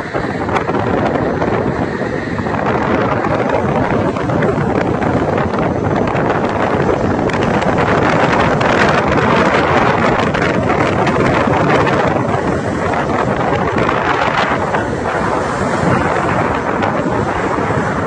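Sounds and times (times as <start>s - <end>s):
rough sea: 0.0s - 18.0s
storm wind buffeting microphone: 0.0s - 18.0s.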